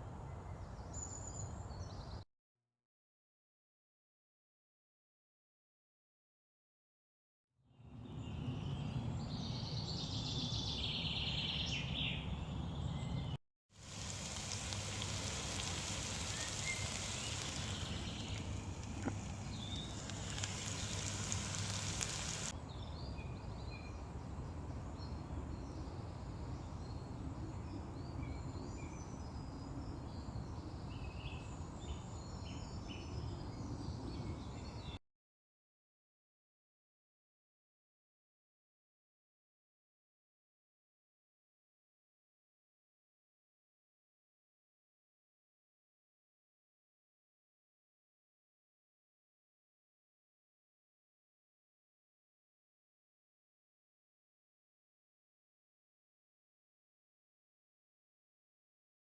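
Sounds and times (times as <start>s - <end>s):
bacon sizzling in a pan: 13.8s - 22.5s
birds chirping: 13.9s - 22.5s.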